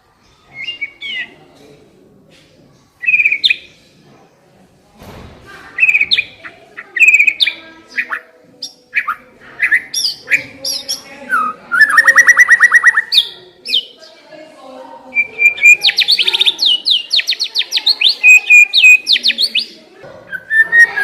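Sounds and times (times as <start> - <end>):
bird singing whistled notes: 0.5 - 1.3, 3.0 - 3.6, 7.0 - 14.0, 15.1 - 21.0
fast bird trill: 5.8 - 14.0, 15.2 - 21.0.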